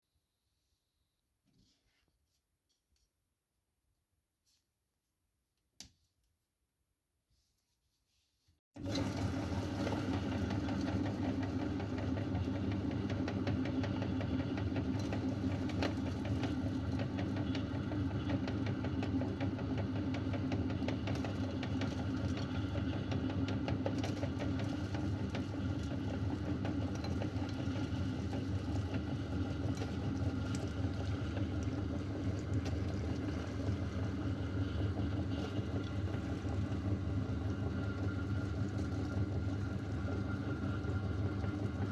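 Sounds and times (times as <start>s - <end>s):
electric meat grinder running: 8.8s - 41.9s.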